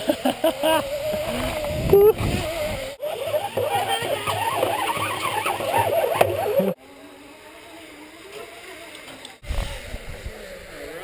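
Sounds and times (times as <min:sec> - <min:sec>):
zipline pulleys whirring on cable: 0:00.0 - 0:11.0
wind noise: 0:00.6 - 0:03.0, 0:09.4 - 0:11.0.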